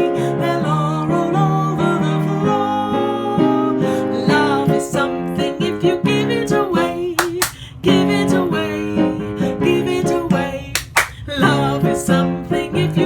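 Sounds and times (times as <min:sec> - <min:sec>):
piano accompaniment: 0:00.0 - 0:13.0
woman singing: 0:00.0 - 0:13.0
hand claps: 0:07.2 - 0:07.6, 0:10.8 - 0:11.2.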